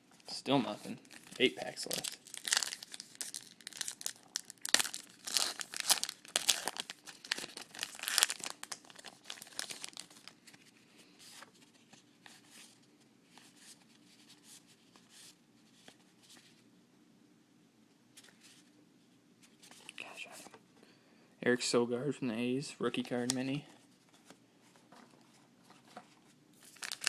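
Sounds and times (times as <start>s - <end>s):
card pack wrapper tearing: 1.0s - 10.3s, 26.6s - 27.0s.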